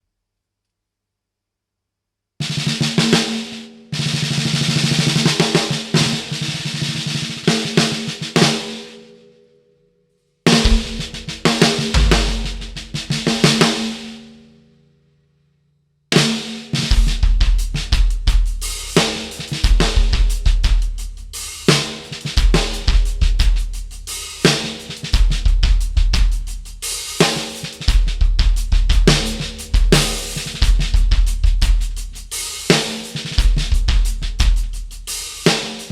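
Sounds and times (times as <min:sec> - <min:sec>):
drum kit groove with hi-hat: 0:02.4 - 0:09.0, 0:10.5 - 0:14.2, 0:16.2 - 0:35.9
deep bass drum beats: 0:10.5 - 0:13.6, 0:17.0 - 0:18.6, 0:19.7 - 0:21.3, 0:28.0 - 0:32.2, 0:33.4 - 0:35.0
snare drum strokes: 0:10.5 - 0:14.2, 0:29.1 - 0:30.9.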